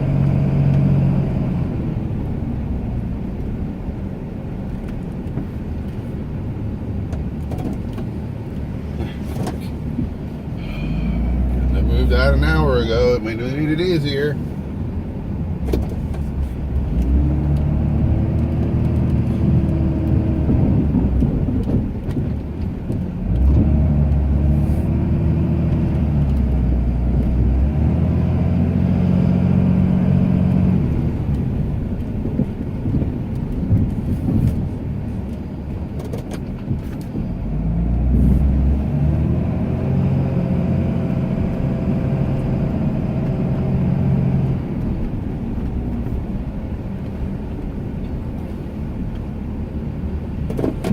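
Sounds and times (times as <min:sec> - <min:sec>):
pickup truck engine revving: 0:00.0 - 0:02.2, 0:09.7 - 0:14.5, 0:16.4 - 0:21.7, 0:23.2 - 0:31.5, 0:37.4 - 0:45.1.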